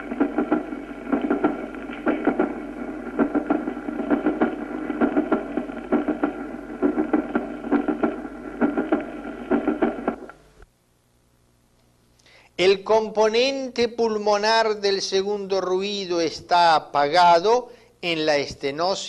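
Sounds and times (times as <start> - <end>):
heartbeat: 0.0 - 10.5.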